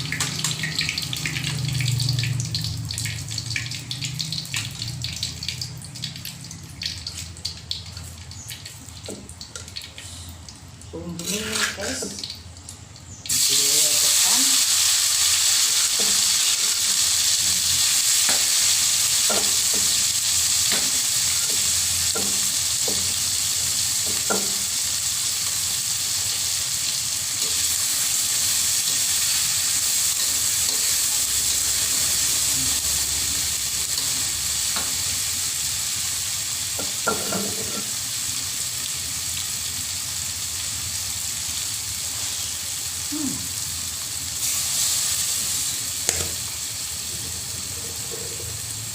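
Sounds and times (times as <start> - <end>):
shallots sizzling in hot oil: 0.0 - 9.8, 11.0 - 12.4, 13.1 - 48.9.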